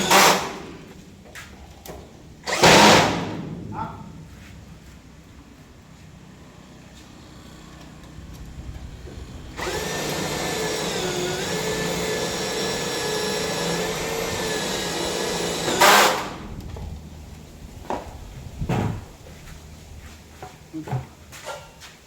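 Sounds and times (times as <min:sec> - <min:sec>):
power drill running: 0:00.0 - 0:00.8, 0:02.4 - 0:03.3, 0:09.3 - 0:16.4.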